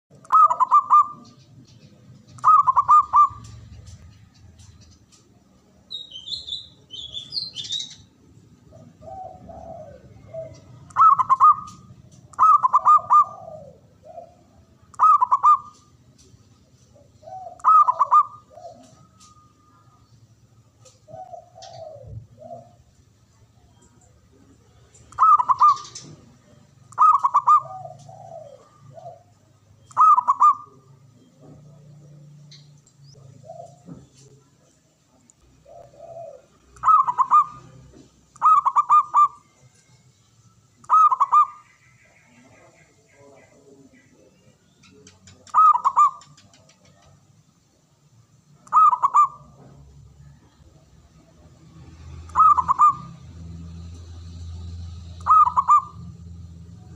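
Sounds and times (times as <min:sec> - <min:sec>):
dove cooing: 0:00.2 - 0:04.9, 0:06.4 - 0:19.9, 0:20.7 - 0:23.7, 0:24.3 - 0:32.3, 0:33.1 - 0:34.4, 0:35.4 - 0:39.7, 0:40.8 - 0:41.7, 0:44.9 - 0:47.3, 0:48.6 - 0:51.5, 0:52.3 - 0:53.6, 0:55.0 - 0:56.9.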